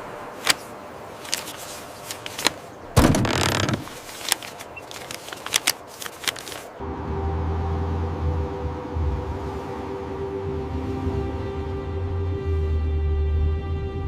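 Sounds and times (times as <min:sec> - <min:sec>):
scattered clicks and knocks: 0:01.3 - 0:06.6.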